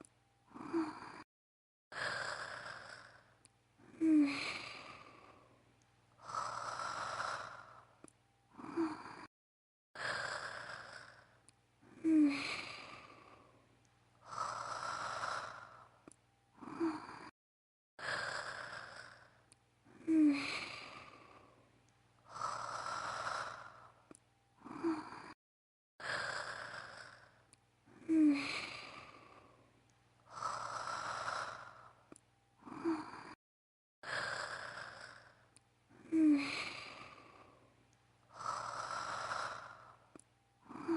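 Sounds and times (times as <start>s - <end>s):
woman imitating snoring: 0.5s - 1.3s, 2.0s - 5.5s, 6.2s - 7.8s, 8.5s - 9.3s, 10.0s - 13.5s, 14.2s - 16.0s, 16.6s - 17.3s, 18.0s - 21.4s, 22.3s - 24.0s, 24.6s - 25.4s, 26.0s - 29.5s, 30.3s - 32.0s, 32.6s - 33.4s, 34.0s - 37.6s, 38.3s - 40.0s, 40.6s - 40.9s.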